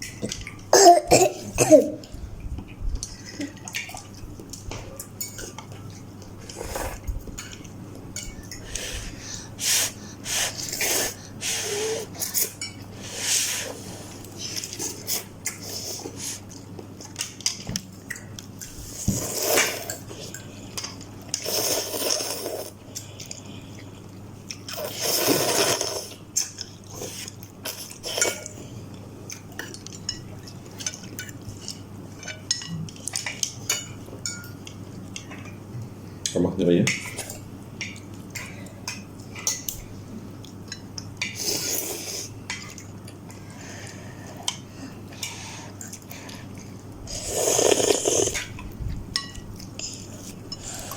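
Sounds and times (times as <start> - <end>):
noodle slurping: 24.8 - 26.2, 47.1 - 48.5.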